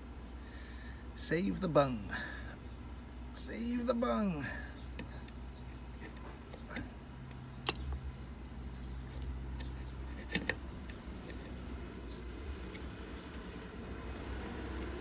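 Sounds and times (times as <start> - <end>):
steady low hum: 0.0 - 15.0
tool clicking on rubber bung: 9.1 - 11.6.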